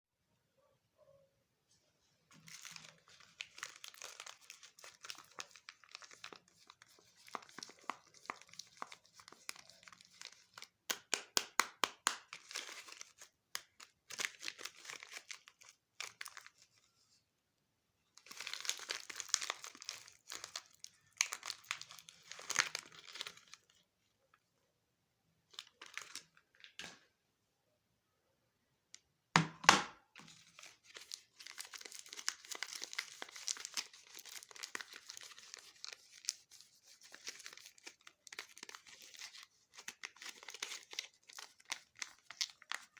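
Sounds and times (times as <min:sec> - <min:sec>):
wrappers crinkling and tearing: 0:02.3 - 0:10.8, 0:12.2 - 0:16.8, 0:18.2 - 0:23.8, 0:25.5 - 0:26.8, 0:30.2 - 0:42.9.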